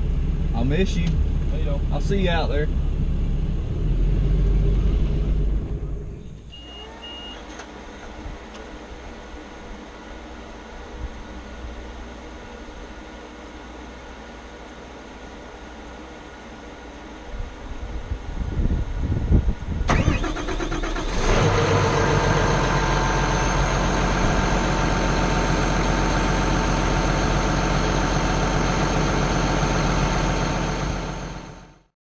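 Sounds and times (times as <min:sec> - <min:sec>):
diesel engine cranking and running: 0:00.0 - 0:09.0, 0:19.7 - 0:31.9.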